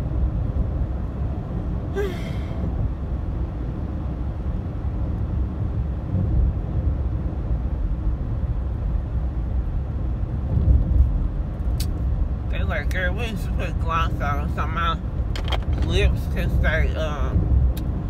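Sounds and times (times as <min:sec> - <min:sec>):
car interior rumble: 0:00.0 - 0:18.0.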